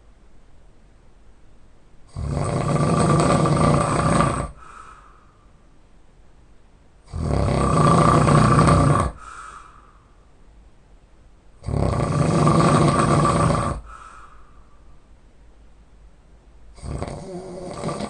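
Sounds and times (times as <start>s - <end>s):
man snoring: 2.1s - 4.7s, 7.1s - 9.4s, 11.6s - 14.0s, 16.8s - 18.0s
faint breath: 3.9s - 5.8s, 9.0s - 10.4s, 13.7s - 15.2s.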